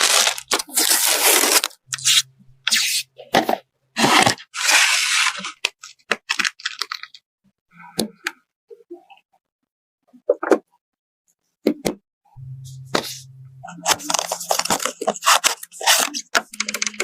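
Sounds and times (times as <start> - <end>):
rustling tearing noises: 0.0 - 2.2.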